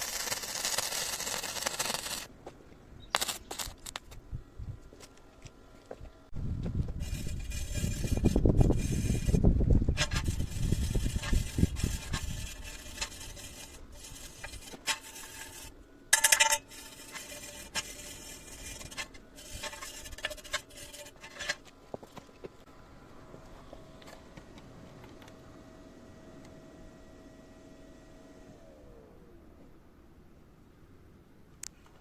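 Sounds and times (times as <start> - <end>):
metal scraping and rubbing: 0.0 - 2.3, 3.1 - 4.2, 7.0 - 21.7.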